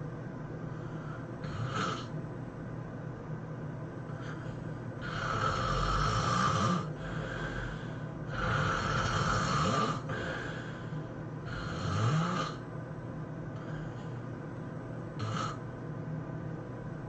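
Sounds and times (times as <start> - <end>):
person snoring: 0.8 - 2.1, 4.2 - 12.6, 15.2 - 15.6.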